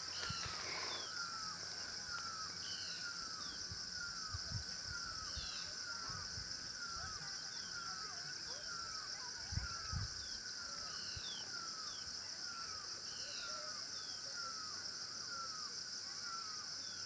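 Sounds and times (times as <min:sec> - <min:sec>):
birds chirping: 0:00.0 - 0:04.4.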